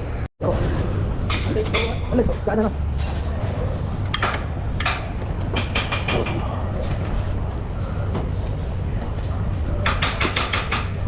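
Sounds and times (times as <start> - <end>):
steady low hum: 0.0 - 11.0
tools clicking and clanking: 2.9 - 7.4.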